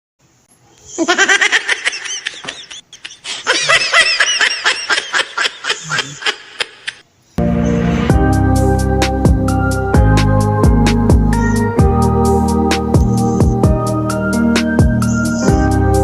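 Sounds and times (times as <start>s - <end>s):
high-pitched laughter: 0.8s - 7.0s.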